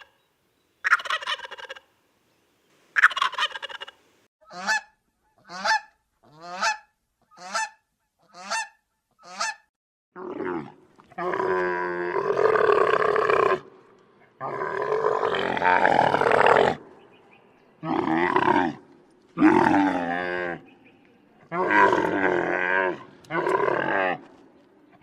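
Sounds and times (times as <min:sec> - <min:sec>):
waterfowl honking: 0:00.8 - 0:01.8, 0:03.0 - 0:09.6.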